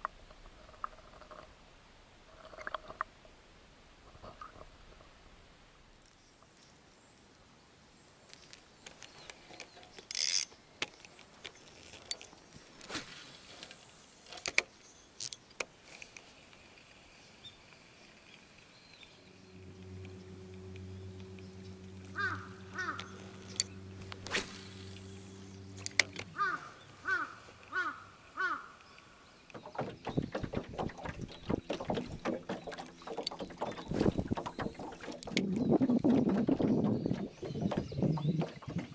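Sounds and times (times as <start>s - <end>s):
steady low hum: 16.4s - 38.9s
scattered clicks: 19.5s - 26.4s
crows cawing: 22.1s - 23.2s, 26.3s - 28.8s.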